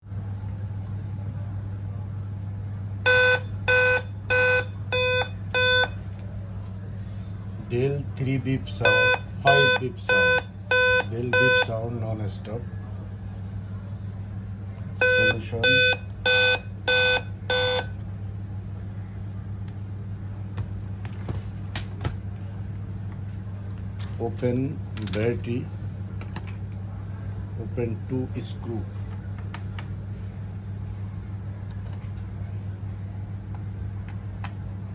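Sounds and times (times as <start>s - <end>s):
steady low hum: 0.0s - 34.9s
short beeps: 3.1s - 6.0s, 15.0s - 17.9s.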